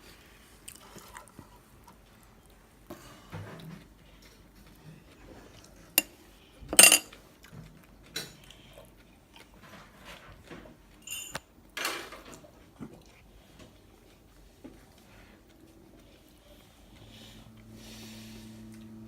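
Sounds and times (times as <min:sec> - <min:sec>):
cutlery and dishes clinking: 0:06.8 - 0:07.1, 0:11.0 - 0:12.3
dishes clattering: 0:06.8 - 0:07.1.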